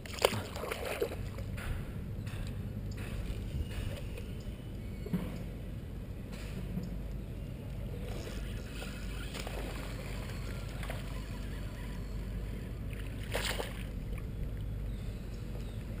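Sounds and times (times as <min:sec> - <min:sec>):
paddle splashing in water: 0:00.0 - 0:01.4, 0:12.9 - 0:13.9.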